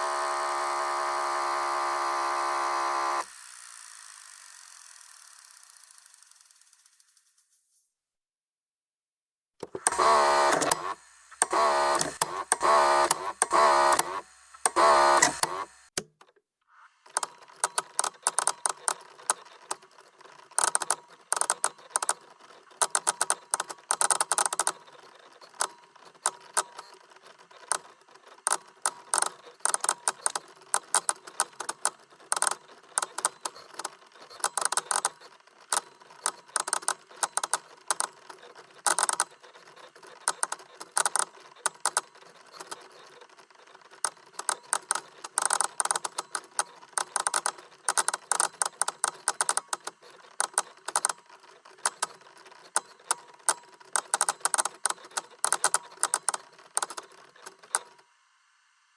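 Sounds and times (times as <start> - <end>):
rapid crackling clicks: 17.1 - 58.0.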